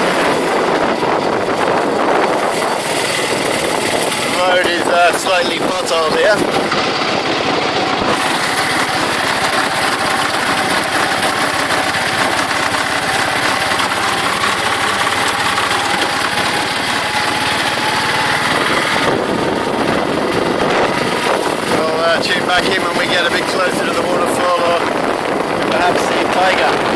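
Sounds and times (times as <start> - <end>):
auto rickshaw engine running: 0.0 - 26.9
faint engine whine: 0.0 - 26.9.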